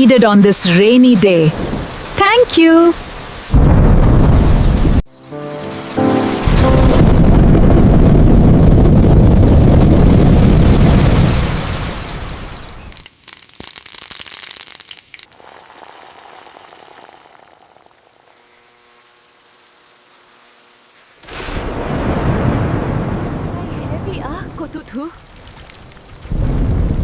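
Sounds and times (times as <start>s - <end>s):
heavy rain with deep rumble: 1.4s - 5.0s, 5.8s - 12.9s, 21.5s - 27.0s.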